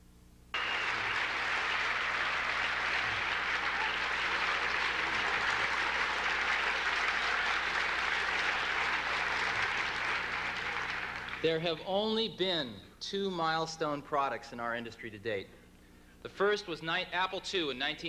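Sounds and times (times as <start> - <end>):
large audience applauding: 0.6 - 11.6.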